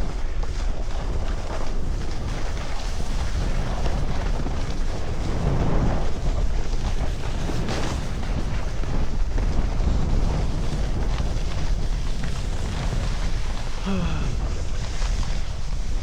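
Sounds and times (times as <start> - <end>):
wind rushing over microphone: 0.0 - 16.0
edges scraping on snow: 1.9 - 13.8.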